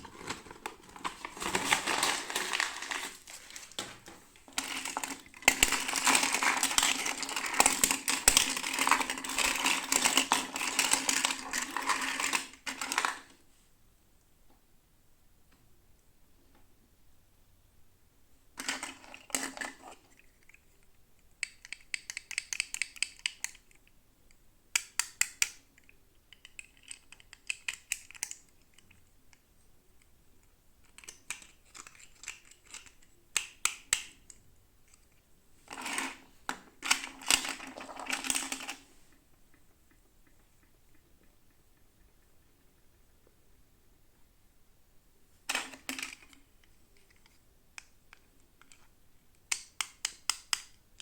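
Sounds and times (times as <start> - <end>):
plastic packaging clicking and crinkling: 0.0 - 13.4, 30.8 - 38.9.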